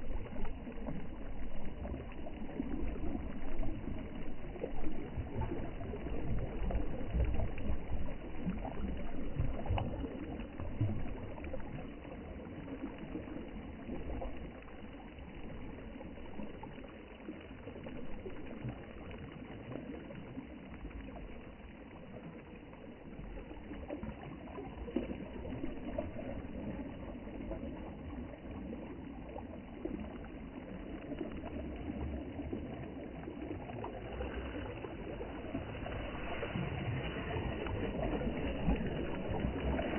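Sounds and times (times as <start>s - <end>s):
sea water lapping: 31.4s - 39.9s.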